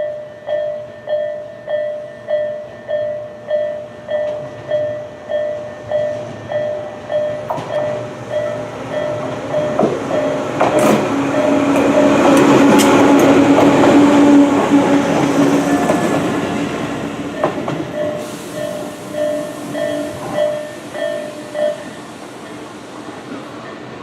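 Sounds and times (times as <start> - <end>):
level crossing alarm dinging: 0.0 - 12.6, 17.4 - 22.0
train rumbling: 0.0 - 24.0
wheels clacking over rail joints: 6.2 - 21.8.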